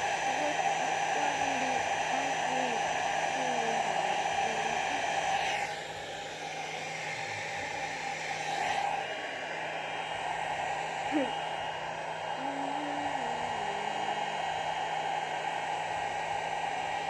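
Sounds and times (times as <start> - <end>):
hair dryer blowing: 0.0 - 17.0.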